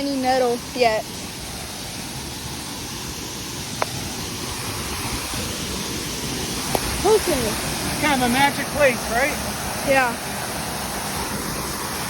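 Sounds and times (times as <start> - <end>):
waterfall roaring: 0.0 - 12.0.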